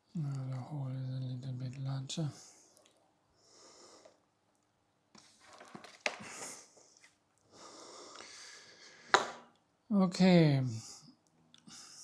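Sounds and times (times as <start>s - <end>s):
person breathing: 3.4s - 4.3s, 6.2s - 9.5s, 10.8s - 12.0s.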